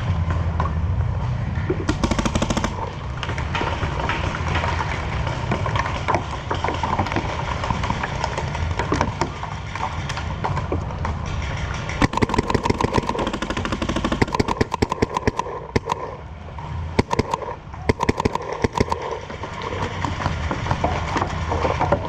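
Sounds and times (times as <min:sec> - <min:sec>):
paintball markers firing: 0:01.9 - 0:03.1, 0:12.0 - 0:16.2, 0:17.0 - 0:19.2.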